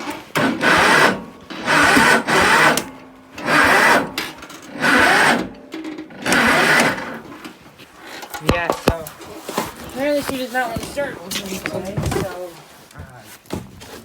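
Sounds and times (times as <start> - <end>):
tractor engine cranking: 0.0 - 7.6.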